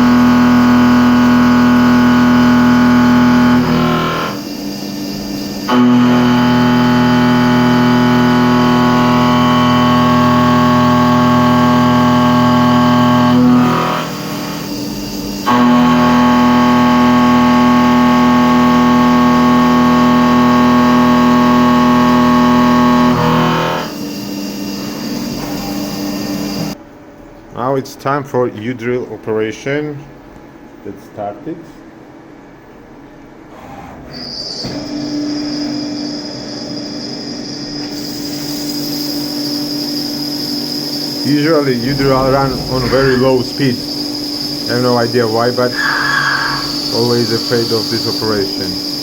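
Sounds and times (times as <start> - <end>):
milling cutter whine: 0.0 - 26.8, 34.0 - 49.0
machine low hum: 40.0 - 49.0.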